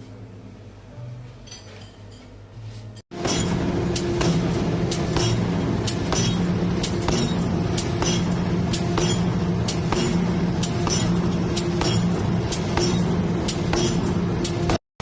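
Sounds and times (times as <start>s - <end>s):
machine humming: 3.1s - 14.8s
sharp machine clicks: 3.3s - 14.8s.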